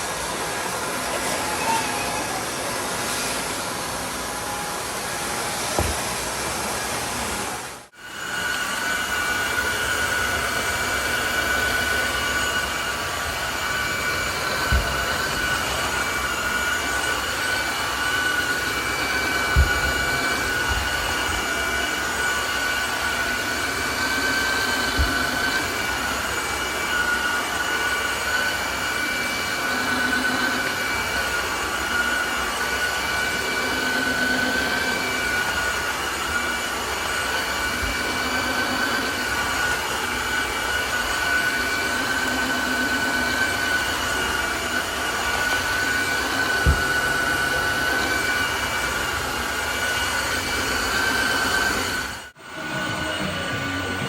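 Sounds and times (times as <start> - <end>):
vacuum cleaner running: 0.0 - 54.0
dull knocks of vacuum head: 5.8 - 6.1.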